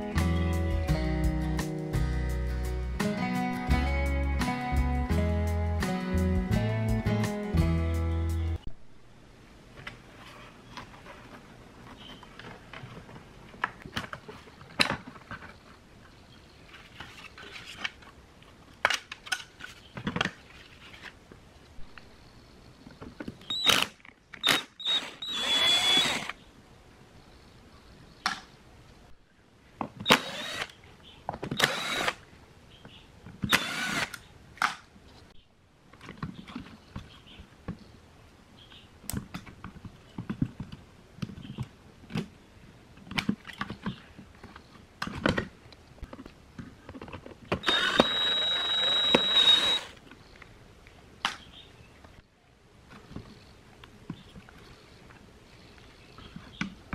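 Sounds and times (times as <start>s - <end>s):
power drill whining: 23.5s - 23.8s, 24.4s - 26.4s, 30.0s - 30.7s, 31.6s - 32.2s, 33.5s - 34.2s, 47.6s - 50.0s
handling knocks and clicks: 39.1s - 42.4s, 43.0s - 48.2s.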